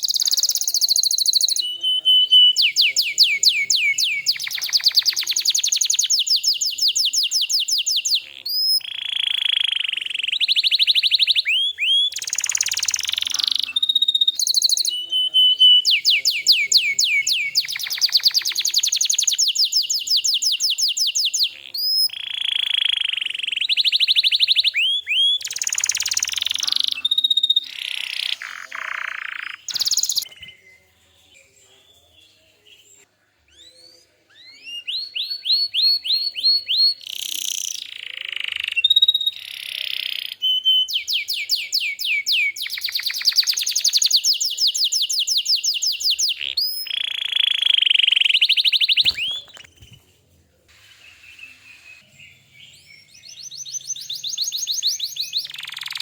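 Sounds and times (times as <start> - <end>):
canary singing trills: 0.0 - 50.0, 50.9 - 56.0.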